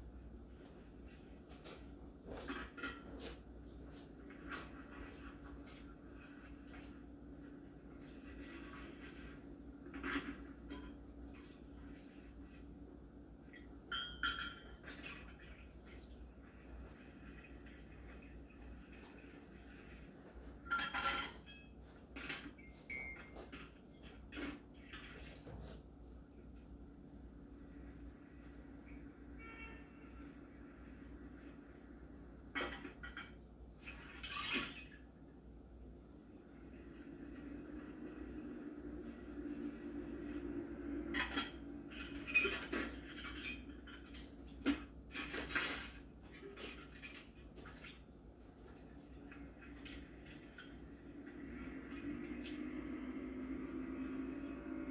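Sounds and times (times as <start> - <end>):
dishes clinking and clattering: 13.5 - 16.1, 20.4 - 25.6, 32.5 - 35.1, 41.1 - 48.0.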